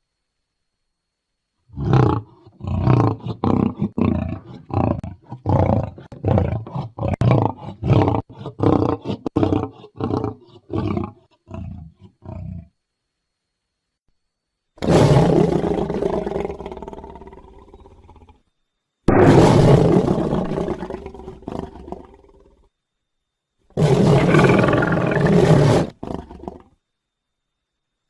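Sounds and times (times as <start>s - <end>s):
cartoon alligator roars: 1.7s - 12.7s, 14.8s - 18.4s, 19.1s - 22.6s, 23.8s - 26.7s
trailing growl: 23.8s - 26.7s.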